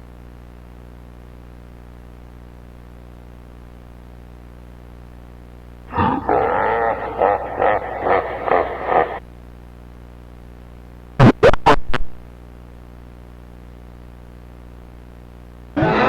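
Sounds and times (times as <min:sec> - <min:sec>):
garbled growling voice over radio: 0:05.9 - 0:09.2, 0:15.8 - 0:16.0
sharp loud crackles: 0:05.9 - 0:09.2.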